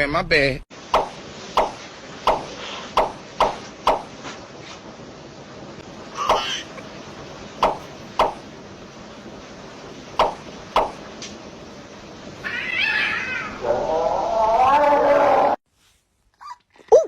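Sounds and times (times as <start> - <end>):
cat meowing: 12.4 - 13.7.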